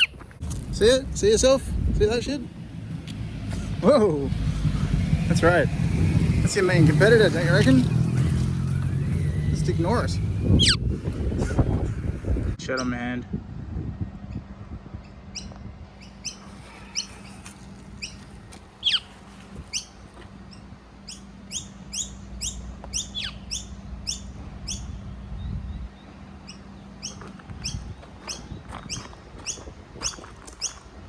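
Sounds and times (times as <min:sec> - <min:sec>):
young bird chirping: 0:00.0 - 0:00.2, 0:10.5 - 0:10.8, 0:15.0 - 0:30.8.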